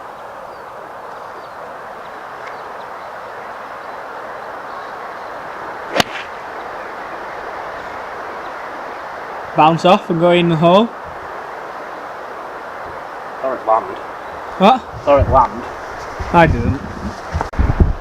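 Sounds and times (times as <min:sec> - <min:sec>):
golf club striking ball: 0:05.9 - 0:06.4.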